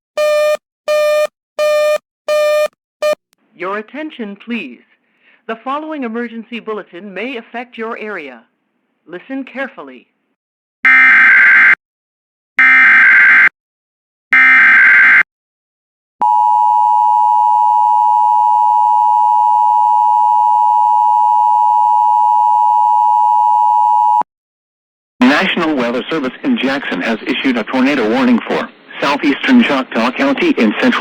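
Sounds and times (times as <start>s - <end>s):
two-tone attention signal: 0.2s - 3.2s.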